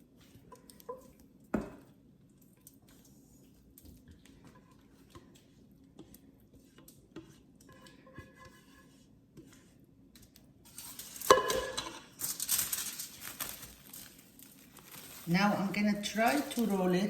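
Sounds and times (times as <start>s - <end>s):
plastic wrap rustling: 10.7s - 17.0s.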